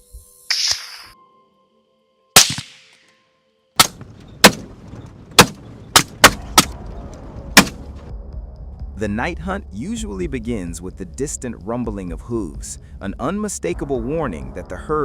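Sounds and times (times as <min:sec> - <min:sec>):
burst of hissing noise: 0:00.5 - 0:01.2
sharp bangs: 0:02.4 - 0:03.0, 0:03.8 - 0:06.8, 0:07.6 - 0:08.0
faint musical tones: 0:03.1 - 0:08.4.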